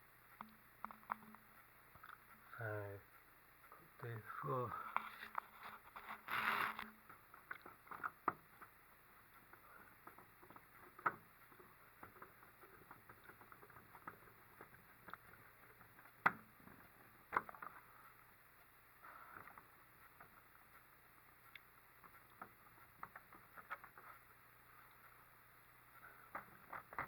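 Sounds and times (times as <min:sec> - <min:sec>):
handling rustle: 0:04.7 - 0:07.0.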